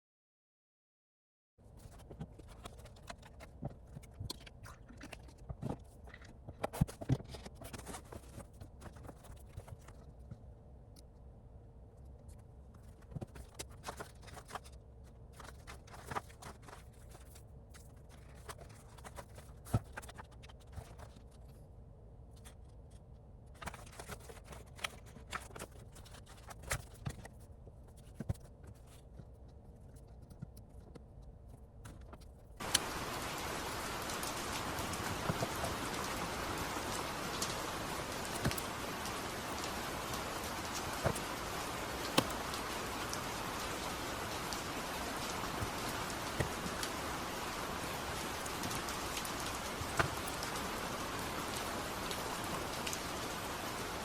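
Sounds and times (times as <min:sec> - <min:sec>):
small clicks taps and scrapes: 0:01.8 - 0:11.1, 0:12.0 - 0:21.6, 0:22.3 - 0:33.0.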